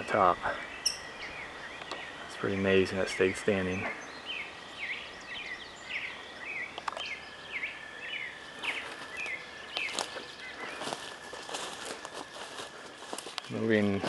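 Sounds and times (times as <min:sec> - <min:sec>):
birds whistling downward notes: 0:00.0 - 0:14.0
footsteps snapping woodland debris: 0:08.5 - 0:14.0.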